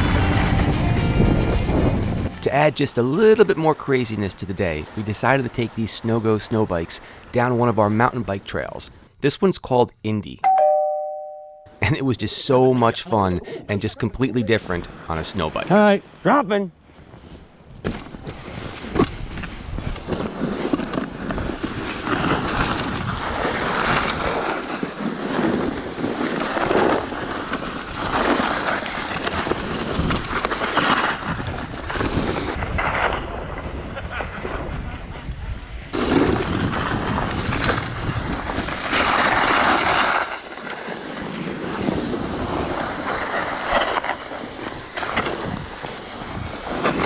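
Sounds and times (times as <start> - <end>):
skis scraping over snow: 17.0 - 47.0
wind buffeting microphone: 31.2 - 39.2.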